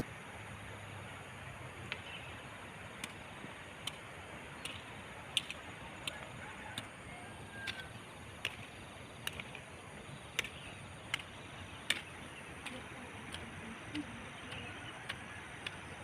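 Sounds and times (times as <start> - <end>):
sharp ticks: 3.8 - 4.0, 7.6 - 9.6, 10.3 - 16.0.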